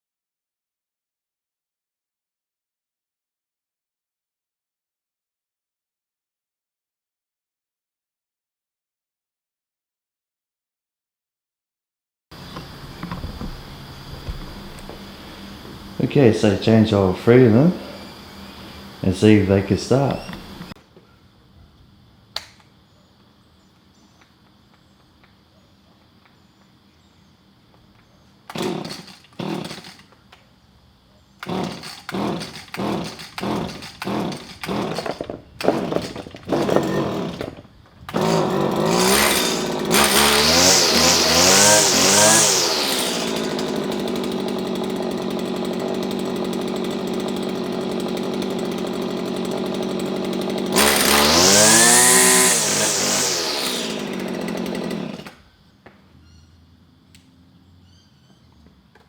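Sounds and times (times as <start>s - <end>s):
small petrol engine revving and idling: 28.5s - 30.1s, 31.4s - 55.4s
recoil starter cord pulls: 28.5s - 30.4s, 31.4s - 55.4s.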